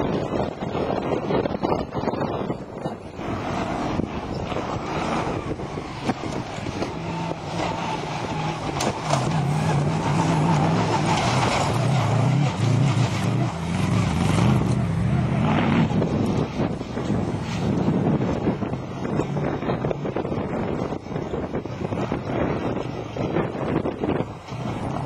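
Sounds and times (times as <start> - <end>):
wind buffeting microphone: 0.0 - 25.0
race car engine passing: 3.1 - 20.8.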